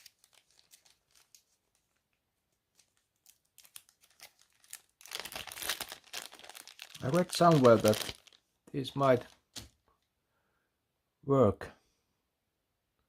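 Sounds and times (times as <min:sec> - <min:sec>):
plastic packaging crinkling: 0:00.0 - 0:09.8.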